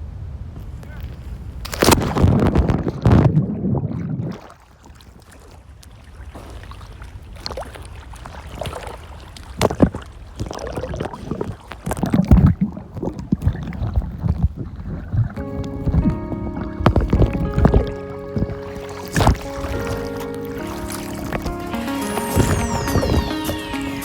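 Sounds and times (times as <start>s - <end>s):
water splashing and sloshing: 1.0s - 24.0s.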